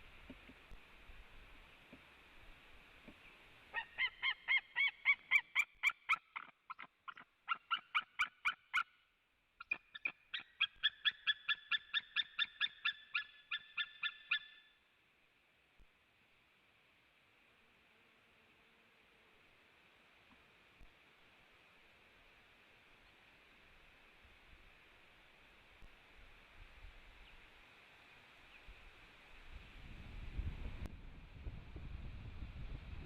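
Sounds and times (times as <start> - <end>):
eagle calling: 3.7 - 8.9, 9.6 - 14.7.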